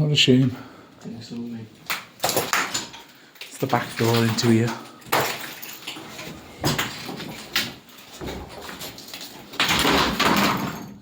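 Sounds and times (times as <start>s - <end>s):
door scraping and rattling: 5.8s - 11.0s.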